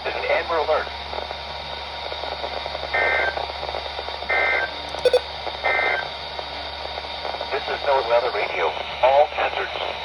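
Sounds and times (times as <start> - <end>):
buzzy digital data squawks: 4.9 - 5.3.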